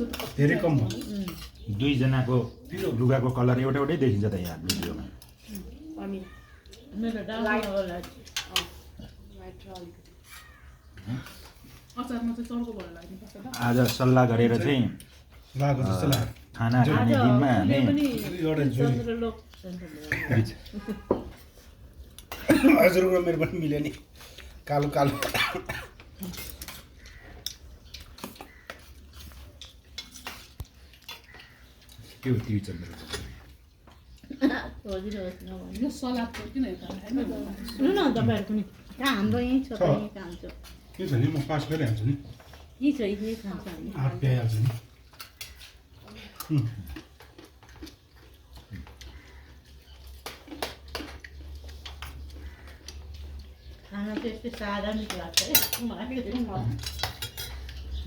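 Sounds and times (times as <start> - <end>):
dishes clinking: 55.2 - 57.9
tableware clinking on plates: 55.4 - 55.9.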